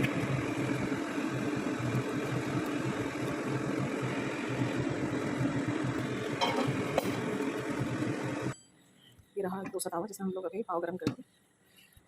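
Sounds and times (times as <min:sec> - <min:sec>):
machine-like hum: 0:00.0 - 0:08.8.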